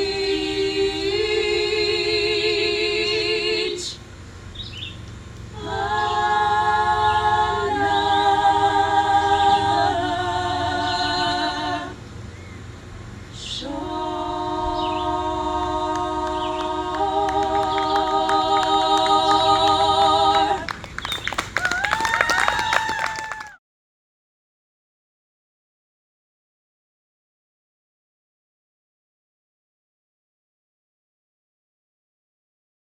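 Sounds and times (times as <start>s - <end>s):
group singing unaccompanied: 0.0s - 4.0s, 5.5s - 12.0s, 13.4s - 21.6s.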